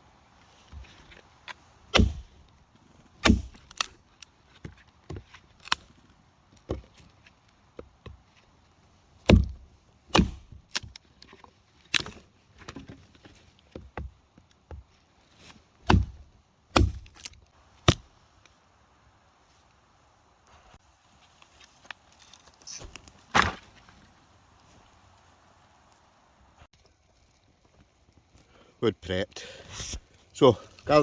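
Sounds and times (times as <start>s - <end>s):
axe chopping wood: 1.9s - 2.4s, 3.2s - 3.9s, 9.2s - 10.9s, 15.8s - 18.1s, 22.8s - 23.7s.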